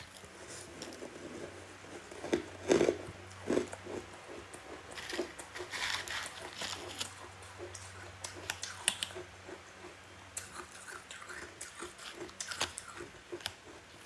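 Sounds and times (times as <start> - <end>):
chewing crunchy frost: 0.0 - 14.0.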